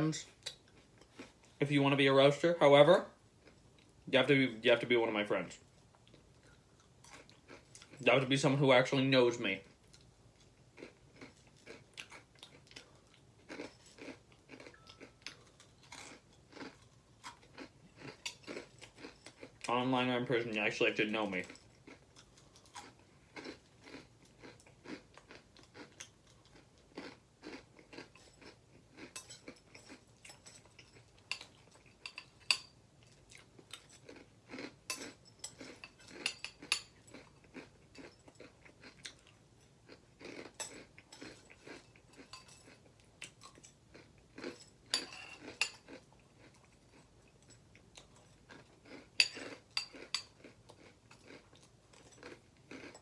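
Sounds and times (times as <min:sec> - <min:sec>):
person crunching cereal: 0:10.0 - 0:20.4, 0:21.2 - 0:30.8, 0:33.2 - 0:47.1, 0:48.0 - 0:53.0.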